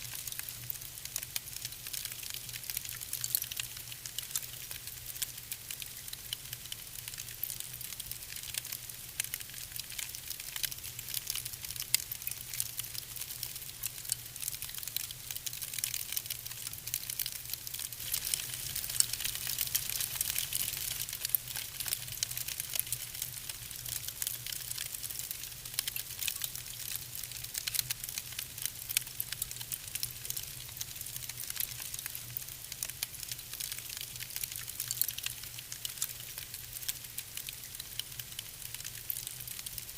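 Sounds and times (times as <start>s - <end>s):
wood fire crackling and hissing: 0.0s - 39.9s.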